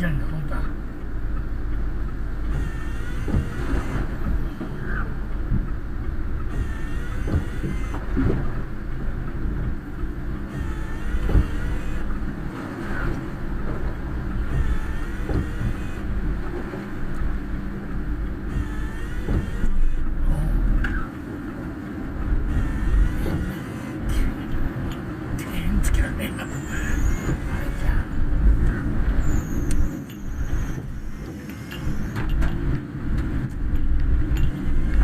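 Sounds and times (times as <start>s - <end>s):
car road and engine rumble: 0.0s - 35.0s
faint squeaks: 10.4s - 12.2s, 14.3s - 17.0s, 25.6s - 32.6s.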